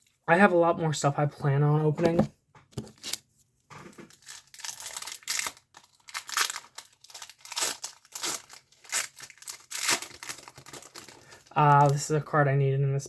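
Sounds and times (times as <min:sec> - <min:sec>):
wrapper tearing and crinkling: 0:02.9 - 0:03.2, 0:03.9 - 0:12.1.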